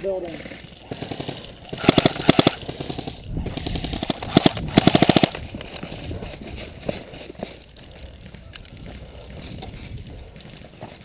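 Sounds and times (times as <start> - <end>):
airsoft gun rapid burst: 0.8 - 5.4.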